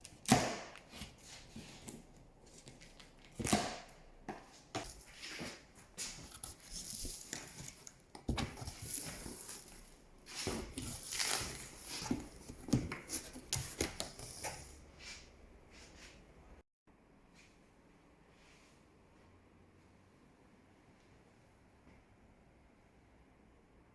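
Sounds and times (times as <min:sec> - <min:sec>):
cardboard packaging rustling: 0:00.0 - 0:15.2.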